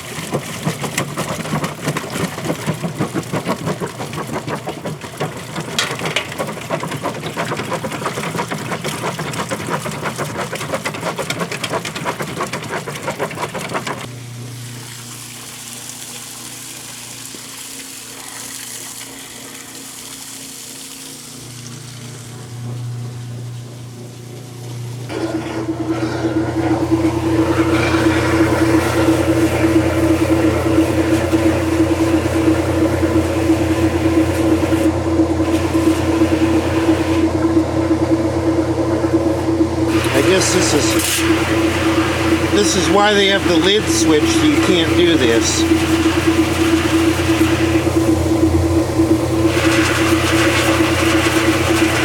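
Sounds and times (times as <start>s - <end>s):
washing machine agitator splashing: 0.0s - 52.0s
motor hum with hiss: 14.0s - 52.0s.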